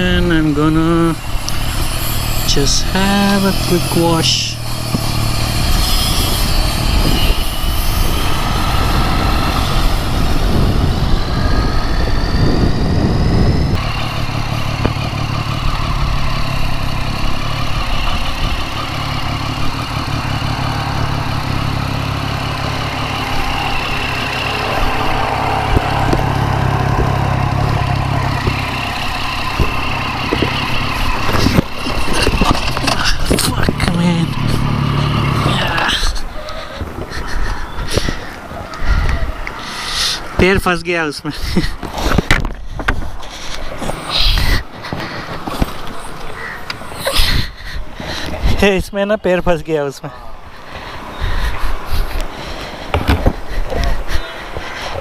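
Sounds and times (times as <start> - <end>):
motorcycle engine running: 0.0 - 37.0
road noise: 0.0 - 55.0.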